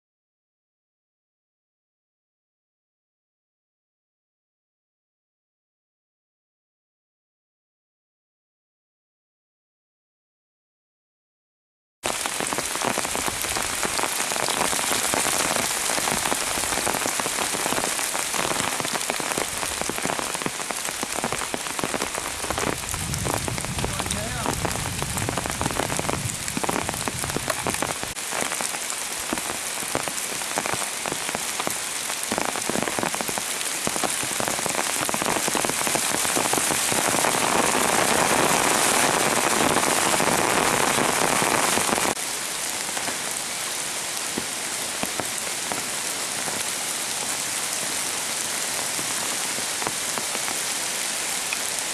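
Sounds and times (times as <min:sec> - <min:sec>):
pouring rain: 0:12.0 - 0:51.9
raindrops striking close by: 0:12.0 - 0:51.9.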